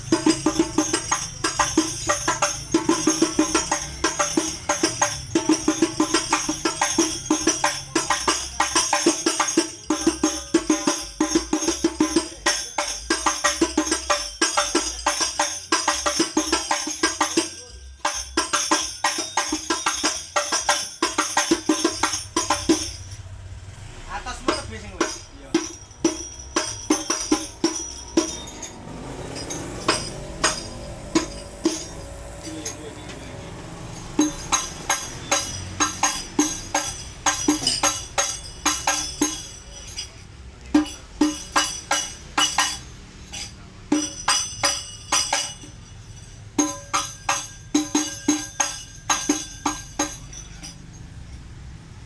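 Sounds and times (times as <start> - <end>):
high ringing: 0.0 - 23.6, 24.2 - 52.0.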